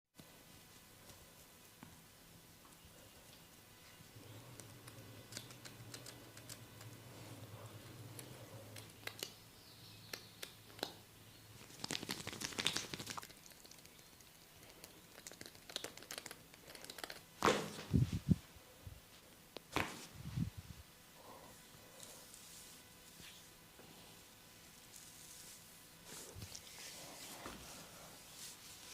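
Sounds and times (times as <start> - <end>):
hands rubbing skin and hair: 11.6 - 14.0, 19.1 - 20.5, 21.6 - 28.9.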